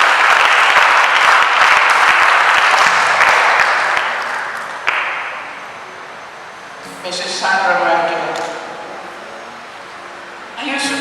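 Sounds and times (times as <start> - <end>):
audience applauding: 0.0 - 5.4.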